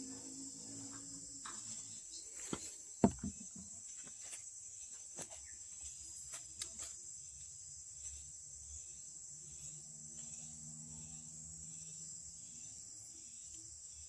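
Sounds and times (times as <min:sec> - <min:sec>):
clicks and knocks: 0:03.0 - 0:03.7
thump: 0:03.0 - 0:03.7
high-pitched insect chirring: 0:03.0 - 0:14.0.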